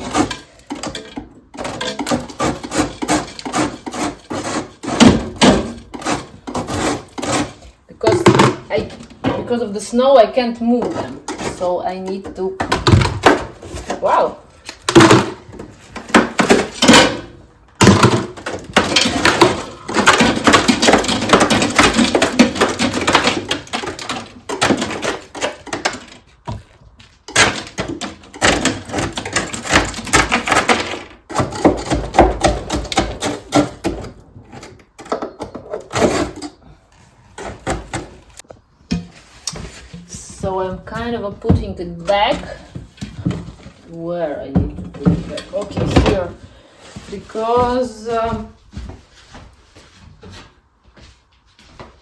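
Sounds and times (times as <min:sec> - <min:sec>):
ice scraping in freezer: 0:00.0 - 0:08.2, 0:09.5 - 0:12.6.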